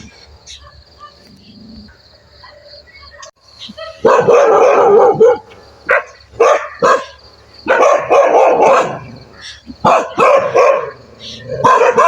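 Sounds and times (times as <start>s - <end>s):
dog barking: 3.1s - 9.2s, 9.8s - 12.0s.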